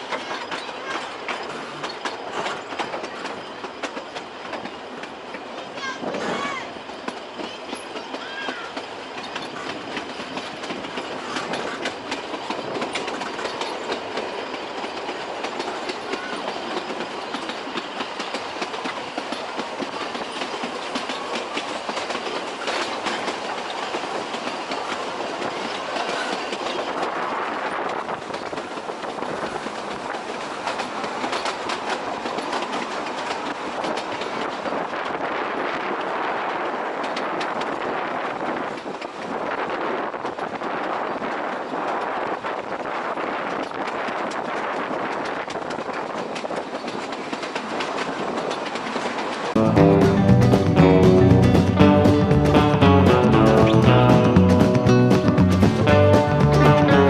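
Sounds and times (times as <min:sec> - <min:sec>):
train wheels clicking over rail joints: 0:00.0 - 0:57.0
carriages rattling: 0:44.3 - 0:57.0.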